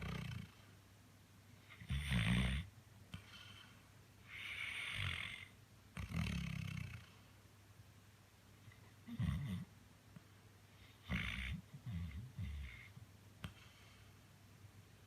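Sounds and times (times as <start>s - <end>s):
dog snoring: 0.0s - 0.6s, 1.7s - 3.6s, 4.3s - 7.1s, 9.1s - 9.7s, 10.9s - 13.8s.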